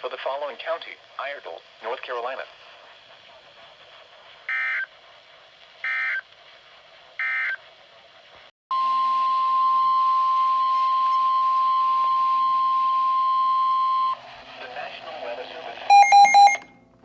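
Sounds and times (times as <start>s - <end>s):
radio hiss: 0.0s - 8.5s, 14.2s - 15.9s
data tone bursts: 15.9s - 16.6s
steady warning alarm tone: 15.9s - 16.6s.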